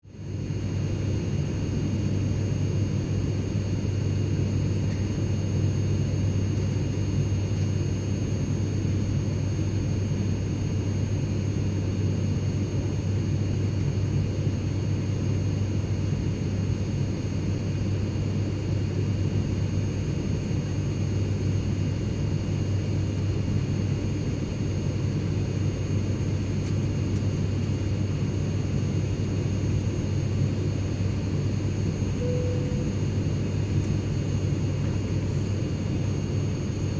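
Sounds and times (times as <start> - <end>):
jet cabin rumble: 25.3 - 36.9
high-pitched whines: 32.2 - 33.4.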